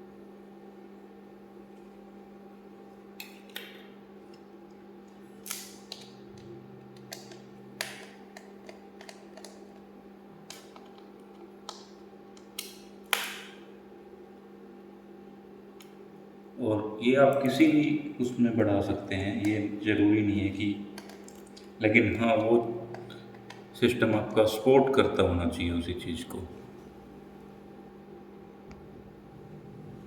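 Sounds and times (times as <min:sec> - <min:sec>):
low electrical hum: 0:00.0 - 0:30.0
clicks and taps of small parts: 0:05.5 - 0:09.7.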